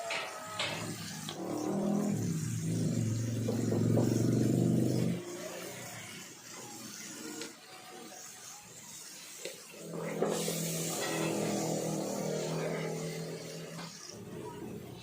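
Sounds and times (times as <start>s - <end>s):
motor humming: 0.0s - 7.6s.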